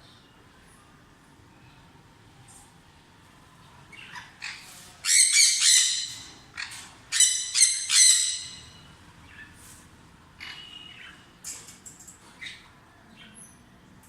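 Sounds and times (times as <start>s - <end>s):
parrot squawking: 3.9s - 8.8s, 10.4s - 11.2s.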